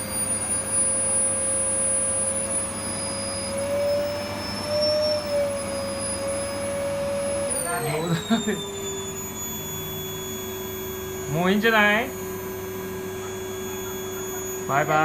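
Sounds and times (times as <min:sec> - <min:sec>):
vacuum cleaner running: 0:00.0 - 0:15.0.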